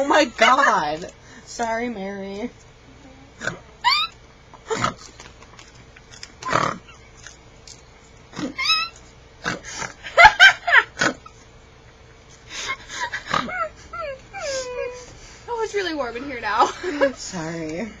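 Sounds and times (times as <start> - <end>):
person laughing hysterically: 9.9 - 11.3, 12.5 - 15.0.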